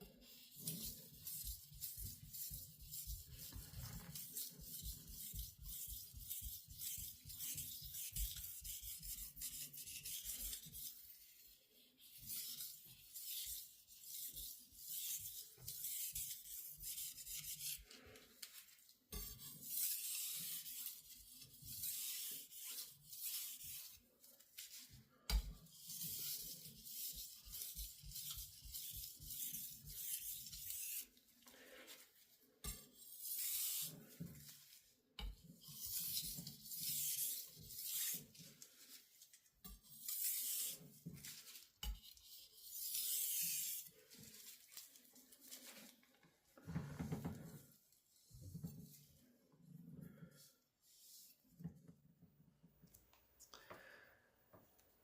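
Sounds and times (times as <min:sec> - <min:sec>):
knife scraping on whetstone: 0:00.2 - 0:18.5, 0:19.1 - 0:24.0, 0:24.6 - 0:31.1, 0:32.6 - 0:38.9, 0:39.6 - 0:44.6.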